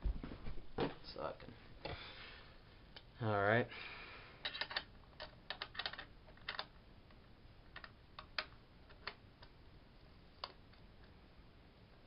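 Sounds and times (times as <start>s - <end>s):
hard objects clicking and tapping: 4.4s - 6.8s.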